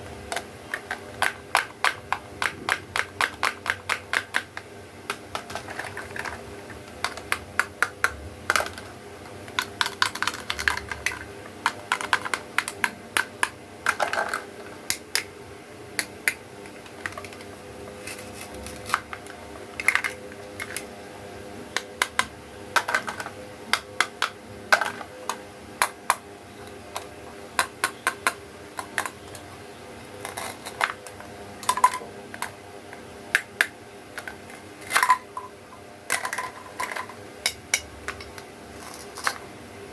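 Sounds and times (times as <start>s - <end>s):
faint steady hum: 0.0s - 39.9s
plastic toy pieces clicking: 0.3s - 4.6s, 5.3s - 8.9s, 9.5s - 15.3s, 27.0s - 29.4s.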